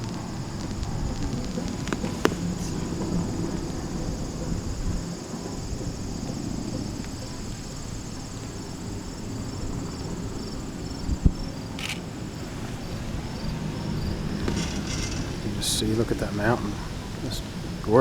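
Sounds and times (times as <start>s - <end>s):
insects chirping: 0.0s - 18.0s
steady low rumble: 0.0s - 18.0s
bump: 12.4s - 17.2s.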